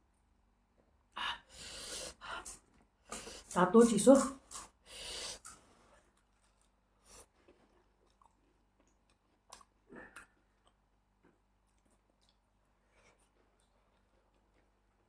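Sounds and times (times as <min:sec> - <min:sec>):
person chewing: 0:01.8 - 0:05.7, 0:06.6 - 0:10.9, 0:11.7 - 0:15.0.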